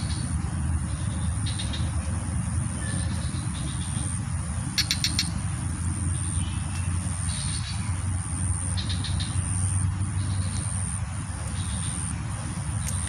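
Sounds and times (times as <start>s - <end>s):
distant traffic rumble: 0.0s - 13.0s
rapid chirps: 0.0s - 13.0s.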